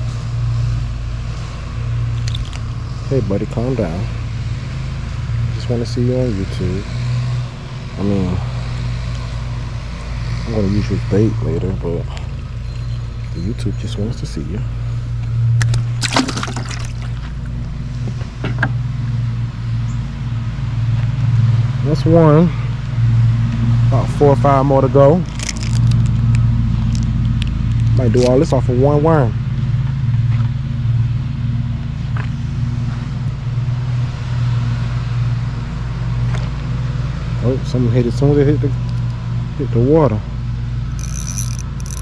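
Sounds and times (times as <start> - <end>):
steady low hum: 0.0 - 37.5
fish splashing in water bucket: 16.0 - 17.2.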